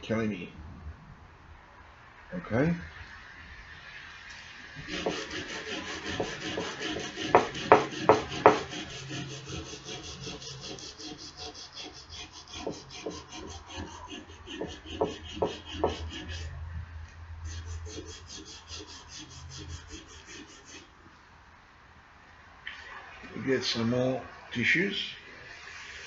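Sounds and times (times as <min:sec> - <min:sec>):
sandpaper scraping metal: 0:04.8 - 0:16.6, 0:17.5 - 0:20.9
knocks: 0:07.3 - 0:08.7, 0:14.6 - 0:16.0.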